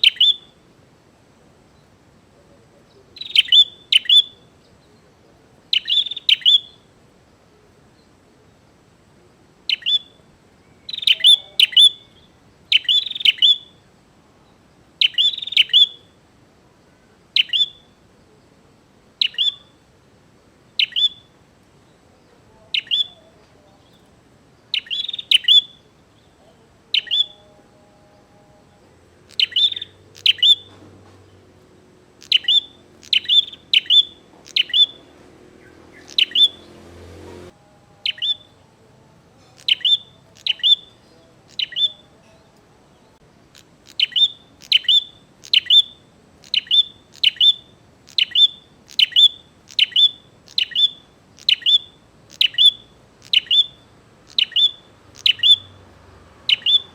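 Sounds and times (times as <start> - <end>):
bird chirping sharply: 0.0 - 0.6, 3.2 - 4.6, 5.7 - 6.9, 9.7 - 13.8, 15.0 - 16.2, 17.3 - 18.0, 19.2 - 19.8, 20.7 - 21.4, 22.8 - 23.2, 24.7 - 25.8, 27.0 - 27.5, 29.2 - 38.6, 39.6 - 42.3, 43.5 - 56.9.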